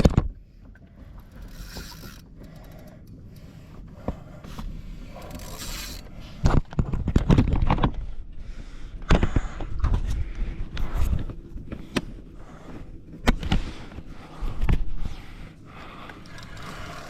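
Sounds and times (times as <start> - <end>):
fishing reel clicking: 1.1 - 3.7, 5.0 - 6.1, 16.1 - 17.0.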